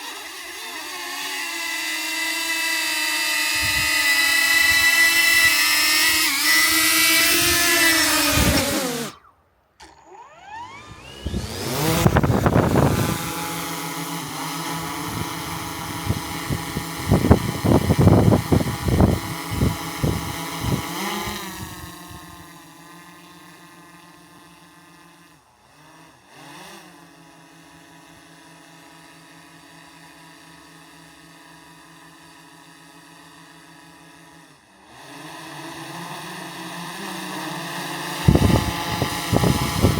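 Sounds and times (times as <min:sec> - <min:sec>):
drone propellers whining: 0:00.0 - 0:25.2, 0:35.1 - 0:39.9
propeller wash on microphone: 0:11.2 - 0:22.5, 0:37.0 - 0:39.9.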